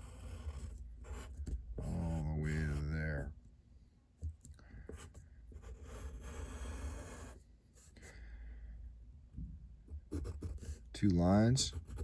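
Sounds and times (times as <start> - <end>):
pen scratching on paper: 0.0 - 2.9, 4.9 - 7.4, 10.1 - 10.8, 11.6 - 12.0.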